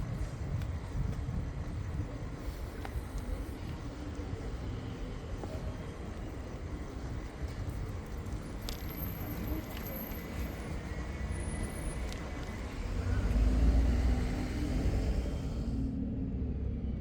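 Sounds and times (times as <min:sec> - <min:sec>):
wind and road noise rumble: 0:00.0 - 0:17.0
light bicycle clicks: 0:07.5 - 0:10.0.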